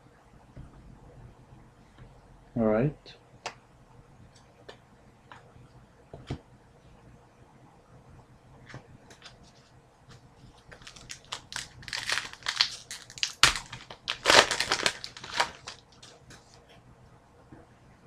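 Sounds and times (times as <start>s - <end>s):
wrapper crinkling and tearing: 10.7s - 16.2s
wrapper sharp snap: 11.1s - 15.8s.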